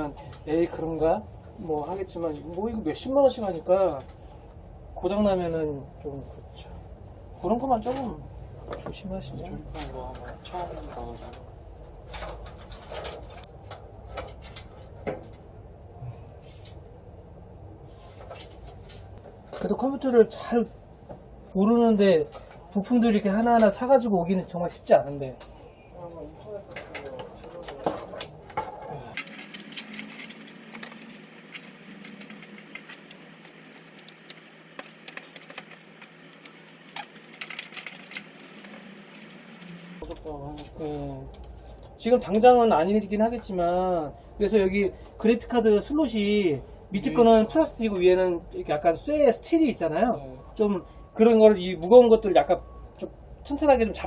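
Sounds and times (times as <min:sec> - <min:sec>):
computer parts clicking and tapping: 0:26.4 - 0:42.5.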